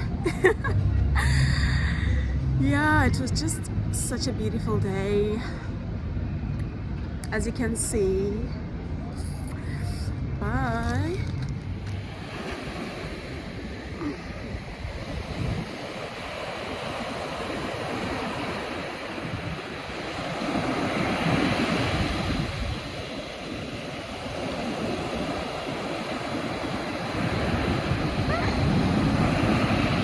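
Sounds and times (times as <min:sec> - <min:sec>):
wind buffeting microphone: 0:00.0 - 0:30.0
ocean waves washing on beach: 0:07.2 - 0:30.0.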